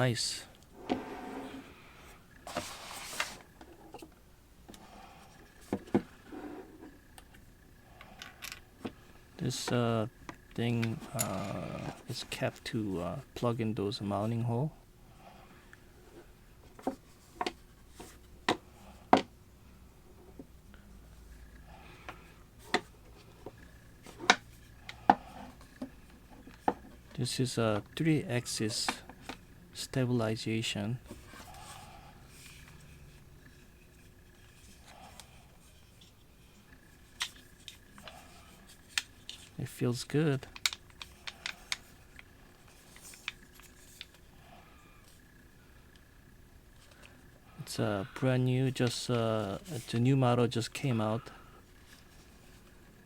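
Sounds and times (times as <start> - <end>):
handling rustle: 2.4 - 4.1.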